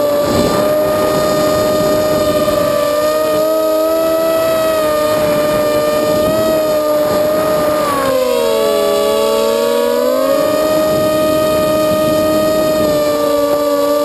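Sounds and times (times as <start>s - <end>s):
quadcopter motors whining: 0.0s - 14.0s.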